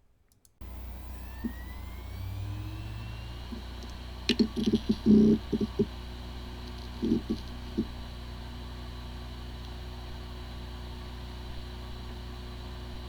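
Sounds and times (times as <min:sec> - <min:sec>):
hard drive clicks: 0:00.6 - 0:10.2
hard drive humming: 0:00.6 - 0:13.0
hard drive whine: 0:00.6 - 0:13.0.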